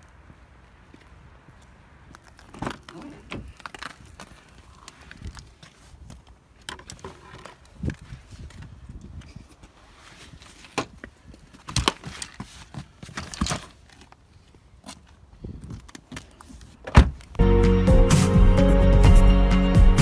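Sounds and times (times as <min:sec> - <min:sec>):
background music: 0:17.4 - 0:20.0.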